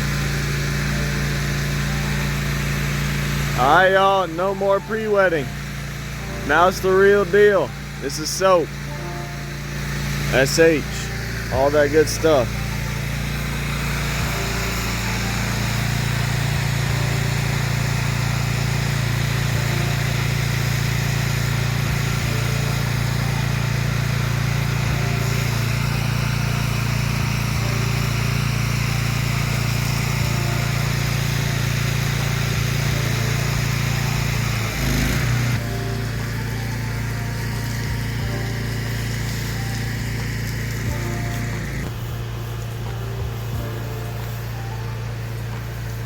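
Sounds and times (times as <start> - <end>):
pressure washer engine running: 0.0 - 46.0
water spraying hiss: 5.4 - 46.0.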